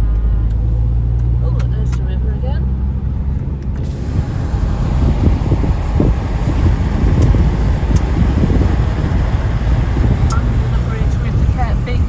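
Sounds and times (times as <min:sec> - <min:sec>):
engine drone: 0:02.2 - 0:12.0
tyre hiss on wet road: 0:03.9 - 0:12.0.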